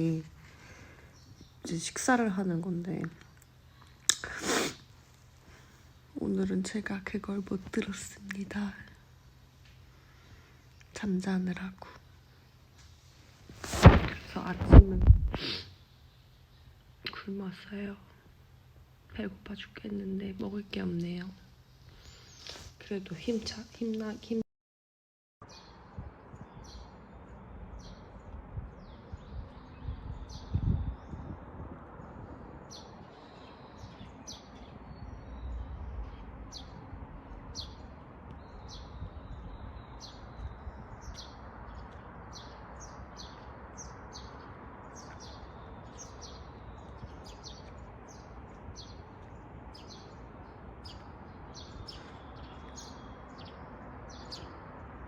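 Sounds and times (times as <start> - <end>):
small birds chirping: 0.0 - 12.9, 19.1 - 24.4, 25.4 - 55.0
background hiss: 3.4 - 6.2, 12.1 - 17.1.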